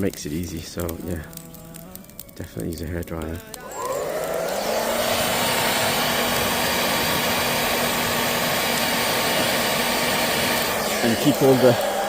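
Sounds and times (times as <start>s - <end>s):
hairdryer blowing air: 3.6s - 12.0s.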